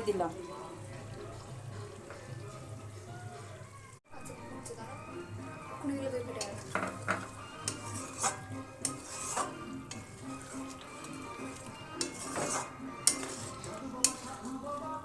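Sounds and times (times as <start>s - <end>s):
faint sizzle: 0.0s - 15.0s
metal spoon stirring in a pan: 5.7s - 15.0s
spoon knocking and scraping pan: 6.3s - 14.5s.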